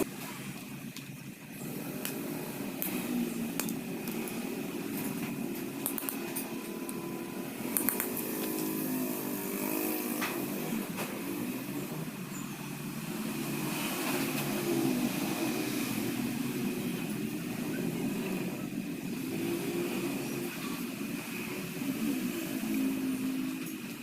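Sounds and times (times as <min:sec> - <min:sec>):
motor humming: 0:00.0 - 0:24.0
sharp metallic clicks: 0:02.0 - 0:07.1, 0:07.7 - 0:08.8.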